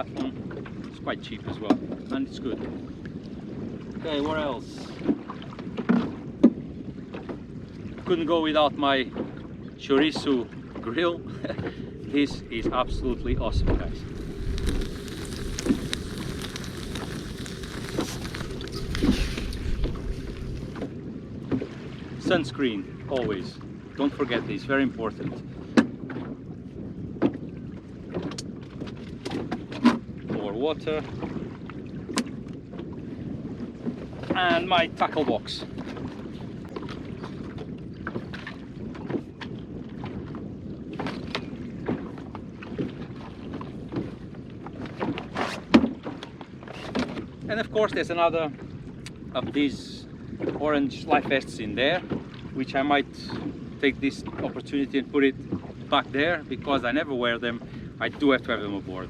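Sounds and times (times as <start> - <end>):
wind: 0.0 - 59.0
water noise: 9.0 - 59.0
steady low rumble: 11.2 - 21.5.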